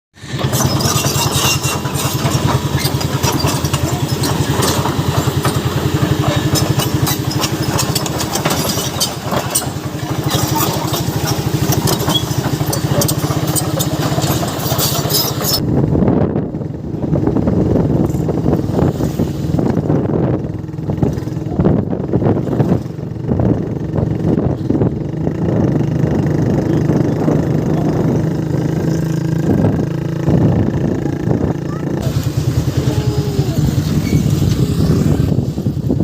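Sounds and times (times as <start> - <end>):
vehicle engine pulsing: 0.2 - 36.0
rattling and clicking: 0.3 - 15.6.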